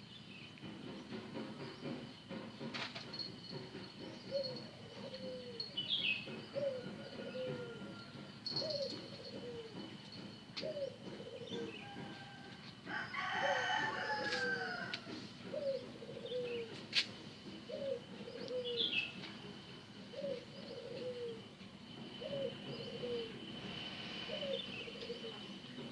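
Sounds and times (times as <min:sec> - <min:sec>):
bird cooing: 0:04.3 - 0:05.7, 0:06.3 - 0:10.0, 0:10.6 - 0:12.4, 0:13.2 - 0:16.8, 0:17.7 - 0:19.2, 0:20.0 - 0:21.5, 0:22.2 - 0:23.4, 0:24.2 - 0:25.6
rooster crowing: 0:06.7 - 0:08.6, 0:11.7 - 0:15.2
high-pitched insect drone: 0:17.6 - 0:25.9.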